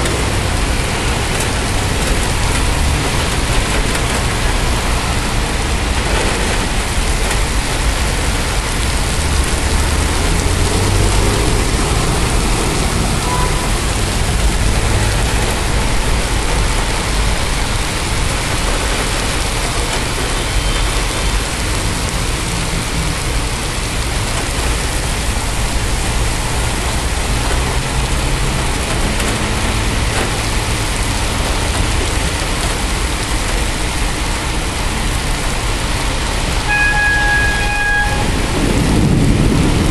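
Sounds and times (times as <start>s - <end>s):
low thunder rumble: 0.0s - 20.3s, 36.6s - 39.9s
heavy rain pouring: 0.0s - 39.9s.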